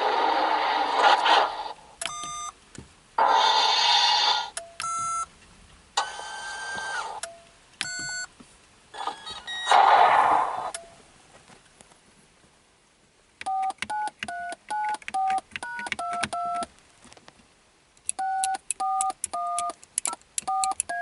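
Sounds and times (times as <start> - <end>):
hissing electronic bursts: 0.0 - 2.0, 3.2 - 4.6.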